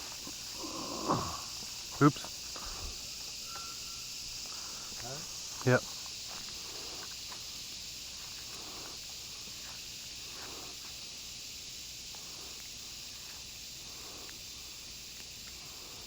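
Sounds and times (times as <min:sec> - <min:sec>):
insect chorus buzzing: 0:00.0 - 0:16.0.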